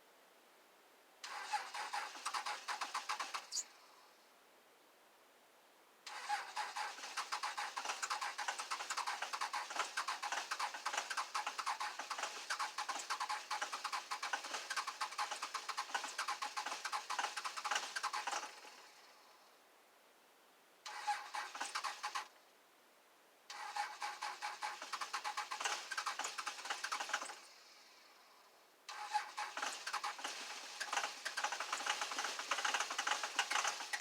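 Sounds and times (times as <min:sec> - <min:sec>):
diesel engine starter cranking: 0:01.2 - 0:03.6, 0:06.1 - 0:19.0, 0:20.9 - 0:22.3, 0:23.5 - 0:27.7, 0:28.9 - 0:34.0.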